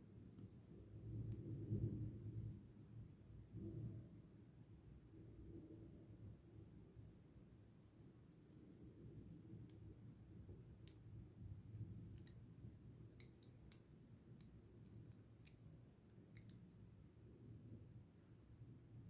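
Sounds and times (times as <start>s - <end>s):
small tools clicking on watch parts: 8.4s - 16.8s.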